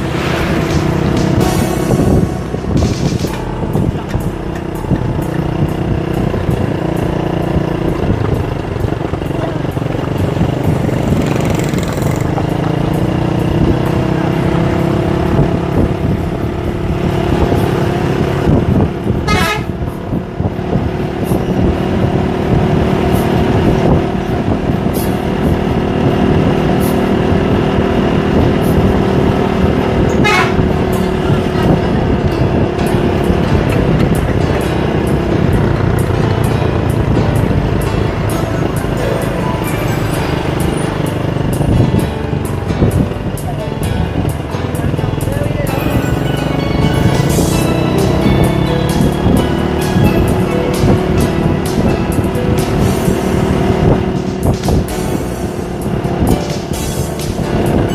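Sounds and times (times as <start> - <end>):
engine rumbling: 0.0 - 57.9
multi-tone musical bus horn: 17.3 - 41.9, 45.8 - 56.3.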